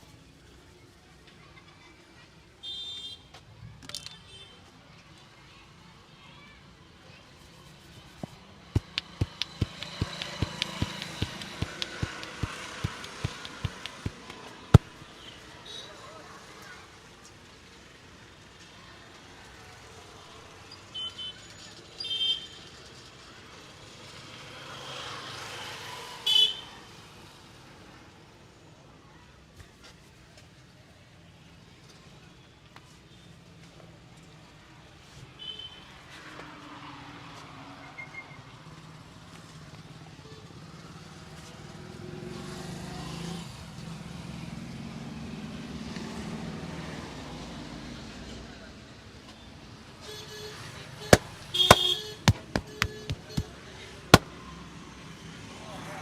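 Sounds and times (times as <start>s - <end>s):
street traffic: 0.0s - 56.0s
vehicle horns honking: 50.1s - 53.5s.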